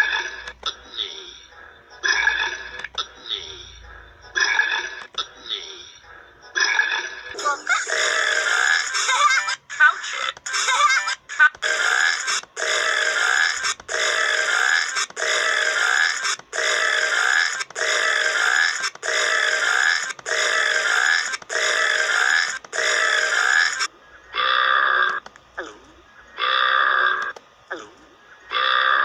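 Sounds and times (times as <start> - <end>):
person burping: 6.6 - 9.0, 11.9 - 23.8.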